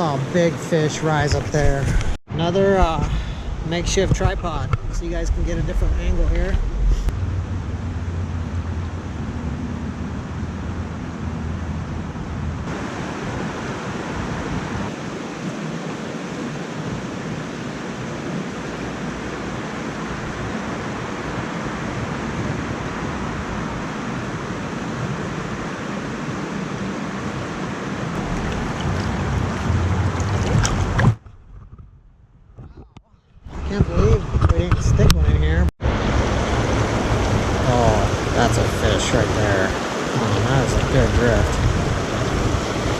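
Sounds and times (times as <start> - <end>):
wind rumble on microphone: 1.2 - 42.9
creek water rushing over rocks: 28.1 - 31.2, 35.9 - 42.9.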